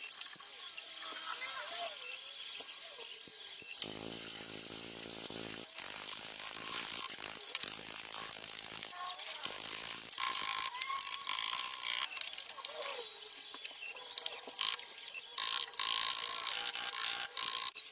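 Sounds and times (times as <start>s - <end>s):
mechanical tool bursts: 3.8s - 10.7s.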